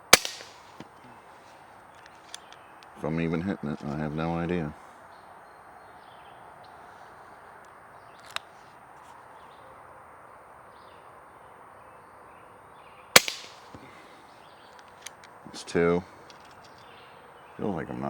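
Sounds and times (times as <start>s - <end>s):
air rifle shot: 0.0s - 0.8s, 13.2s - 14.0s
birds chirping: 0.0s - 18.0s.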